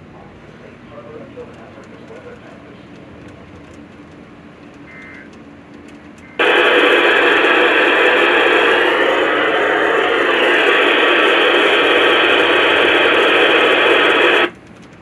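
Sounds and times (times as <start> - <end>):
loud static hiss: 6.4 - 14.5.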